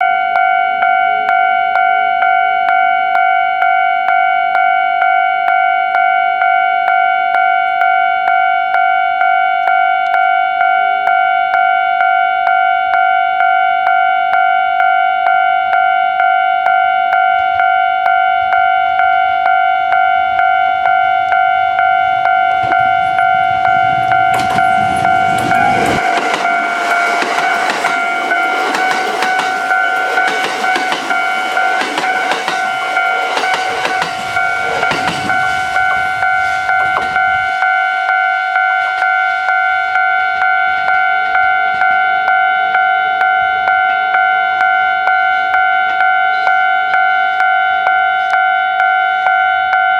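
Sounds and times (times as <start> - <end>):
level crossing warning bell: 0.0 - 49.9
train rumbling: 20.2 - 42.4.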